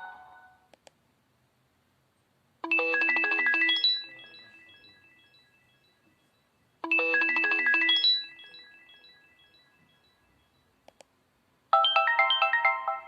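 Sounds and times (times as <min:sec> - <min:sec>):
phone alert chime: 0:00.0 - 0:00.6, 0:02.6 - 0:10.7, 0:11.8 - 0:13.0.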